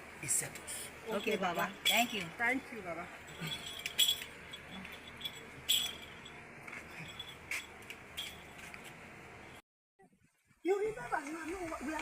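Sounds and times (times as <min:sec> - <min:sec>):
light clicks and clinks: 0:03.3 - 0:08.8.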